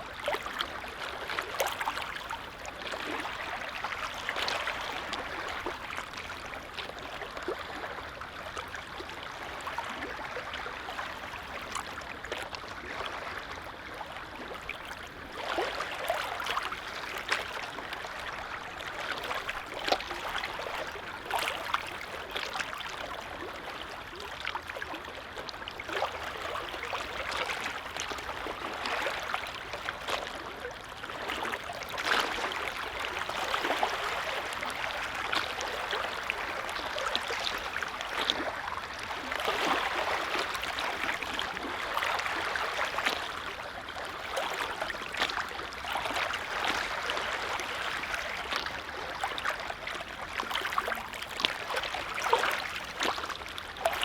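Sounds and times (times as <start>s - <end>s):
small waves lapping: 0.0s - 54.0s.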